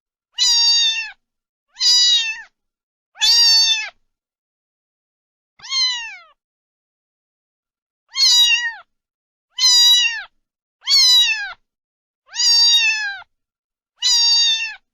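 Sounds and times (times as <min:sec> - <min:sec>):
cat meowing: 0:00.4 - 0:02.5, 0:03.2 - 0:04.0, 0:05.6 - 0:06.4, 0:08.1 - 0:08.9, 0:09.5 - 0:11.6, 0:12.3 - 0:13.3, 0:14.0 - 0:14.9.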